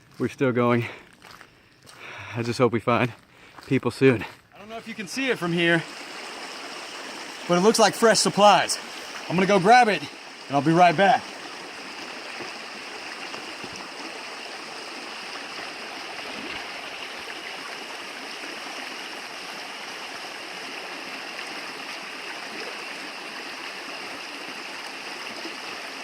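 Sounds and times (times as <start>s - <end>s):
stream rushing: 4.6s - 26.0s.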